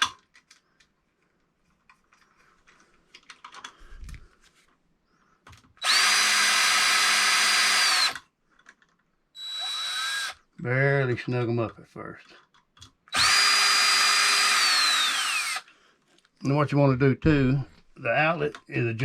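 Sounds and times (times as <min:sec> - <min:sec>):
power drill driving screw: 0:05.8 - 0:08.2, 0:09.4 - 0:10.4, 0:13.1 - 0:15.7.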